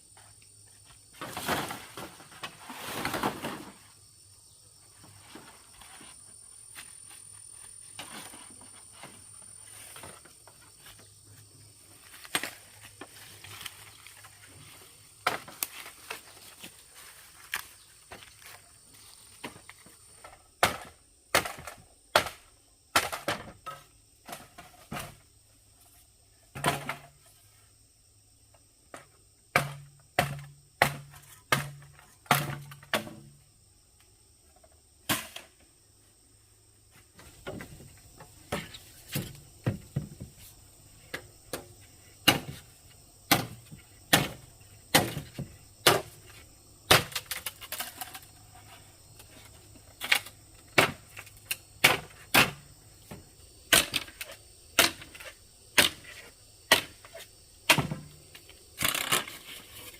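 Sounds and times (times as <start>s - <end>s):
sharp knocks and impacts: 43.3s - 46.2s.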